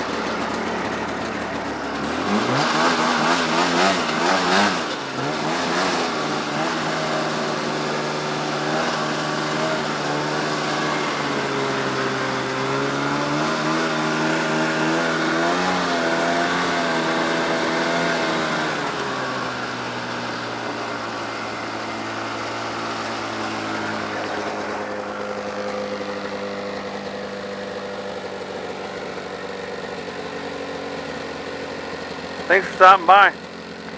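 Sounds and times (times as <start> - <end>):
snowmobile engine revving: 0.0 - 12.1.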